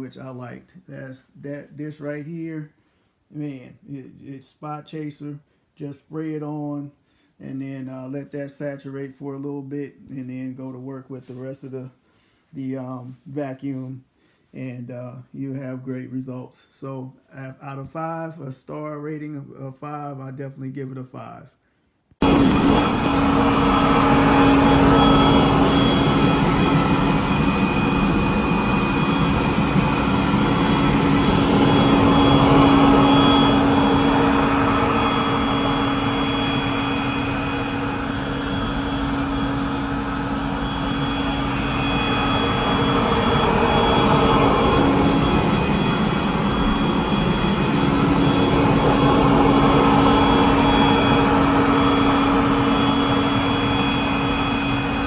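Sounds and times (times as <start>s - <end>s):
carpet cleaner running: 22.2s - 55.0s.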